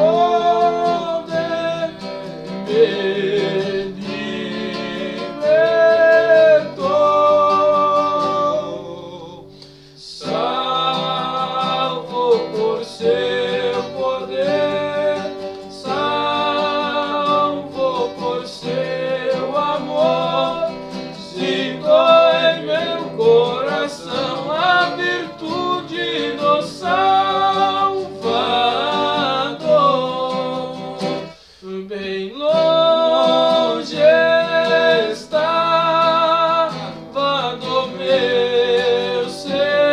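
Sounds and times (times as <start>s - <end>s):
strummed acoustic guitar: 0.0s - 31.6s, 32.2s - 39.9s
men singing a hymn: 0.0s - 39.9s.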